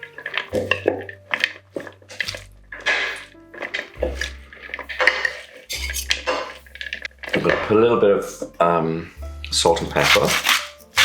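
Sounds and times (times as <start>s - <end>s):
salad being mixed in a bowl: 0.0s - 7.6s
background music with bass: 0.0s - 11.0s.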